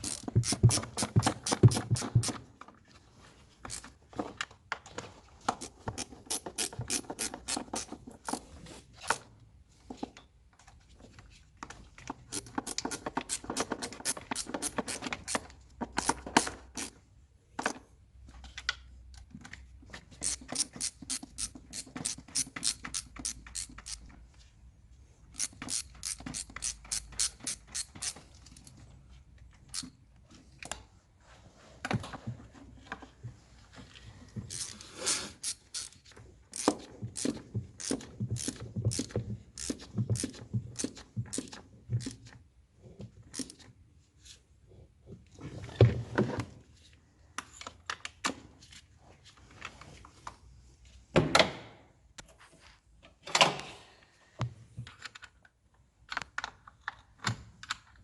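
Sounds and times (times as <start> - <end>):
ratchet wrench clicking: 0.0 - 2.4, 5.6 - 7.9, 12.3 - 15.4, 20.2 - 24.1, 25.3 - 28.2, 34.5 - 34.8, 35.4 - 42.2.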